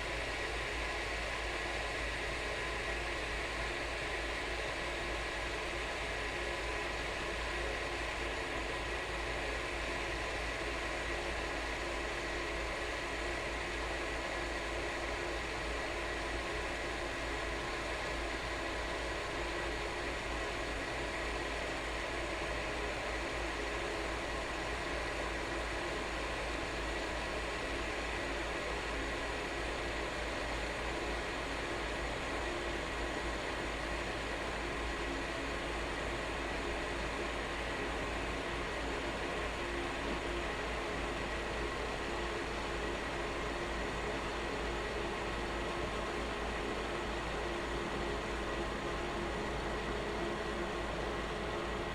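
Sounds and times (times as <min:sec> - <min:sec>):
kettle heating water: 0:00.0 - 0:51.9.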